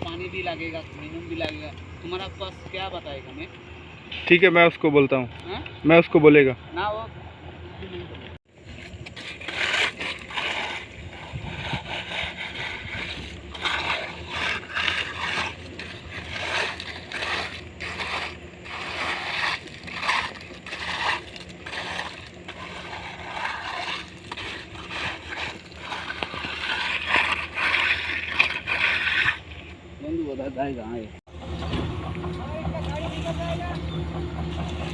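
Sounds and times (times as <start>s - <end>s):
hand tools scraping wet concrete: 8.6s - 30.7s, 32.5s - 34.9s
low engine hum: 31.3s - 34.9s.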